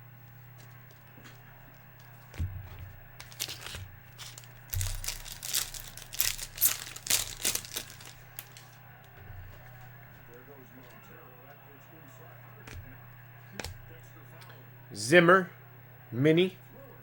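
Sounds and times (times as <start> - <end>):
wrapper tearing and crinkling: 3.2 - 8.7.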